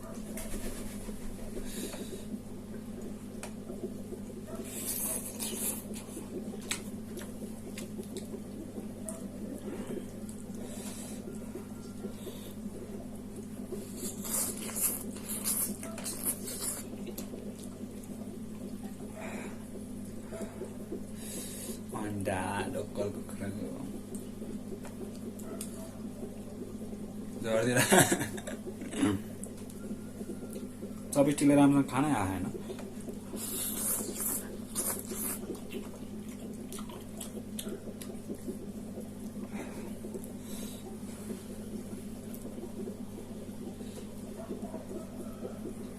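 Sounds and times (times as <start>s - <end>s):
steady low hum: 0.0s - 45.9s
noodles slurped and chewed: 4.6s - 11.5s, 13.6s - 18.7s, 32.7s - 41.4s.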